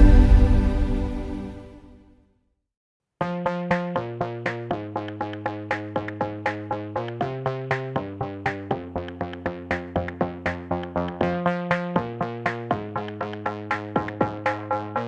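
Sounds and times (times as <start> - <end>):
electronic synthesizer music: 0.0 - 1.8.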